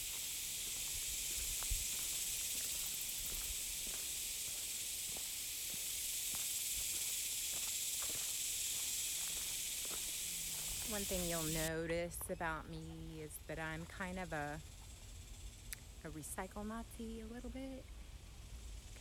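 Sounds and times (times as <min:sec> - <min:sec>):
cicadas buzzing: 0:00.0 - 0:19.0
faint ticks: 0:15.6 - 0:15.9.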